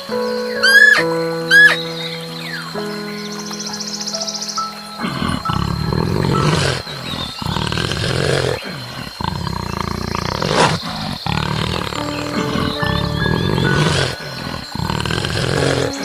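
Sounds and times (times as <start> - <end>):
lion roaring: 5.0 - 16.0.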